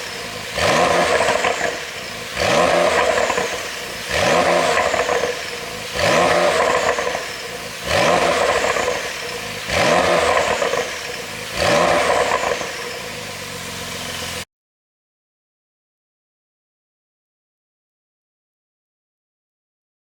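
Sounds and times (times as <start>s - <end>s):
car engine revving in blips: 0.0s - 14.4s
exhaust popping and crackling: 0.0s - 14.4s.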